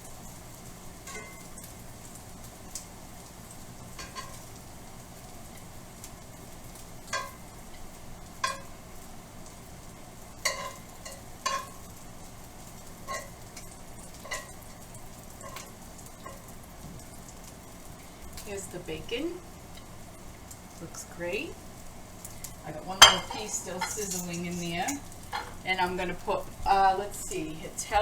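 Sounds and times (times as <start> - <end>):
bacon fat sizzling in a pan: 0.0 - 28.0
utensil clinking against pan: 23.0 - 25.6.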